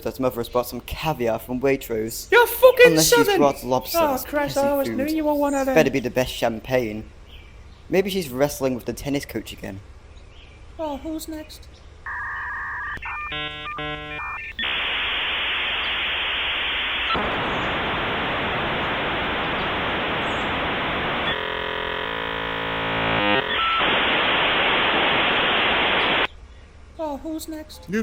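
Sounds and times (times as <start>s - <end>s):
stacked buzzing tones: 12.0s - 26.3s
static hiss: 12.1s - 26.3s.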